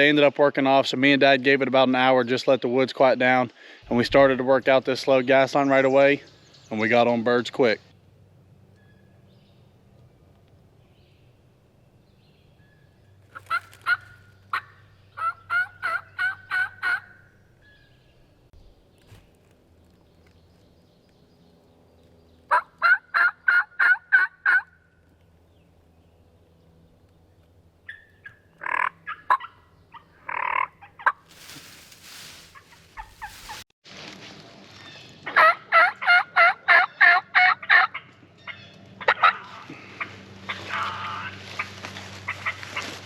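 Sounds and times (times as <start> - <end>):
wild turkey yelping: 13.3 - 17.8, 22.5 - 24.8, 27.8 - 31.3, 32.5 - 33.6, 35.2 - 43.0.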